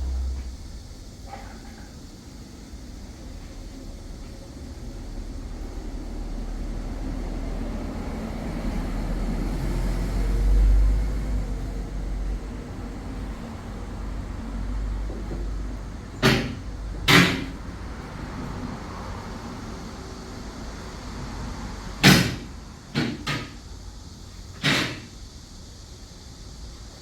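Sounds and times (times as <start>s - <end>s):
car engine idling: 0.0s - 24.6s
sharp knocks: 16.2s - 17.6s, 22.0s - 23.6s, 24.6s - 25.1s.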